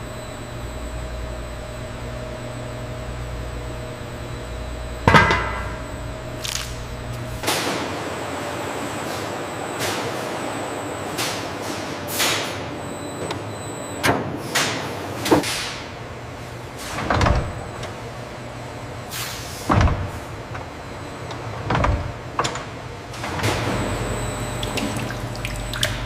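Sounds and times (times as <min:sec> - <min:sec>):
high machine whine: 0:00.0 - 0:11.2, 0:23.3 - 0:26.0
machinery hum: 0:00.0 - 0:26.0
machine clunks: 0:05.0 - 0:06.0.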